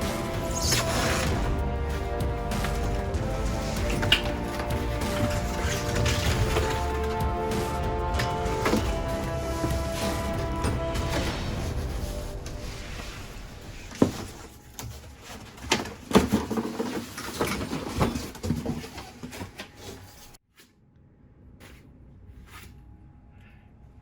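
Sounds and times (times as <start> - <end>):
background music: 0.0 - 16.0.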